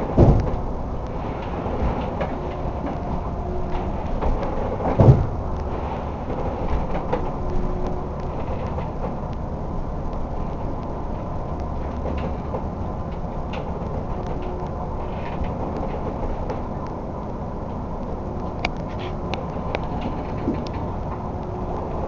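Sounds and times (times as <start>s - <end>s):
boat engine drone: 0.0s - 22.0s
heavy thump: 0.2s - 0.6s, 4.2s - 5.4s.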